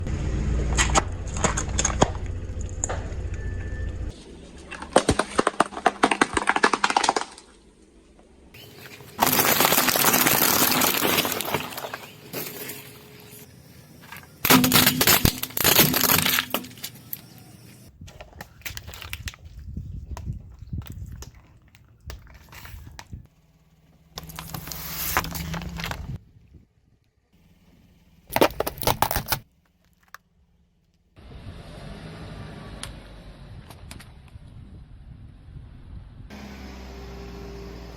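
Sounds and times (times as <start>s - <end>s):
low rumble: 0.0s - 4.6s, 32.8s - 36.3s
tyre crushing brittle objects: 4.6s - 7.6s, 8.6s - 19.6s, 24.2s - 26.2s, 28.3s - 30.2s.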